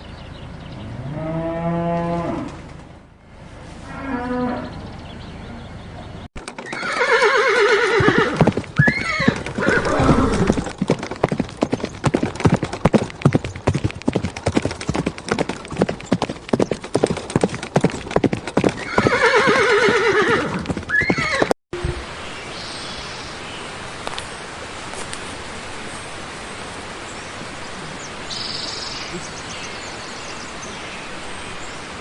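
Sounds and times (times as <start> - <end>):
hooves clip-clopping: 6.4 - 21.6
horse whinnying: 6.6 - 10.8, 18.8 - 21.5.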